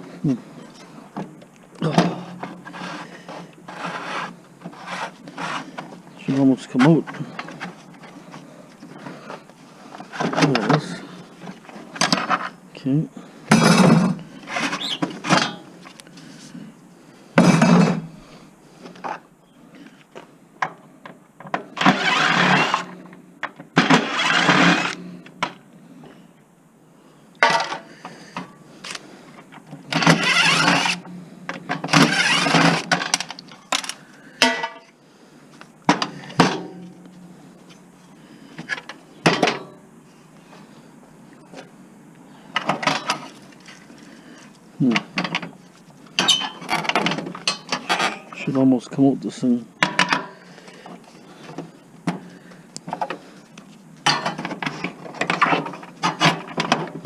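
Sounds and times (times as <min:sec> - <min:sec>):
metal grinding scrapes: 0:02.4 - 0:05.9, 0:21.8 - 0:23.1, 0:23.8 - 0:25.2, 0:29.9 - 0:31.1, 0:31.9 - 0:33.3
metal parts clanking and knocking: 0:13.5 - 0:15.7, 0:38.7 - 0:39.8, 0:46.2 - 0:48.4, 0:49.8 - 0:50.4, 0:54.0 - 0:57.0.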